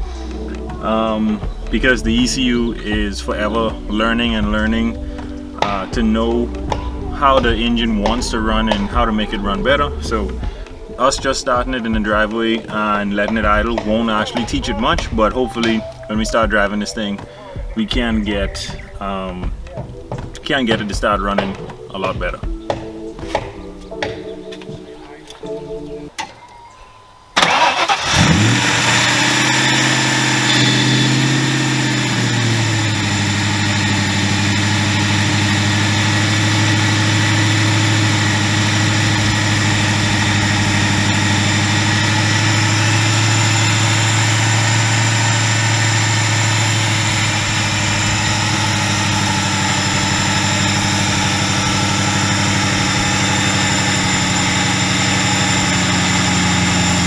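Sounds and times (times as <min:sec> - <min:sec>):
car engine starting and idling: 0:00.0 - 0:20.8, 0:27.4 - 0:57.0.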